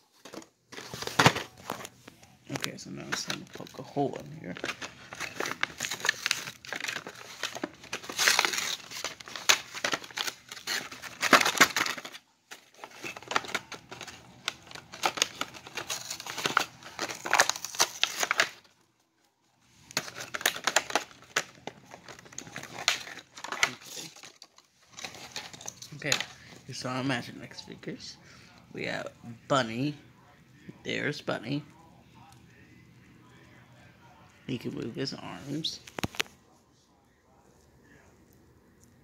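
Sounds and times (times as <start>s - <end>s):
plastic packaging torn and crinkled: 2.5s - 19.0s, 19.8s - 26.4s.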